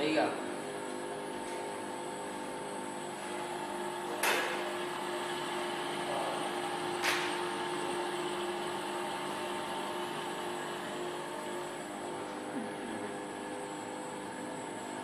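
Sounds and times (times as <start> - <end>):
grinding machine motor whine: 0.6 - 15.0.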